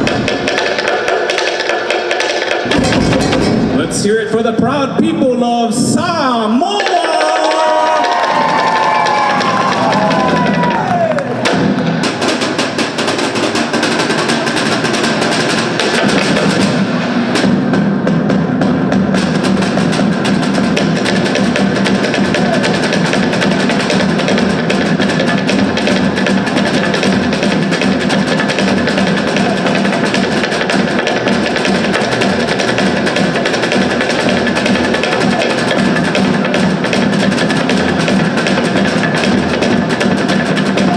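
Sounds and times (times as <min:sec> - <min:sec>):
fast drumming: 0:00.0 - 0:40.9.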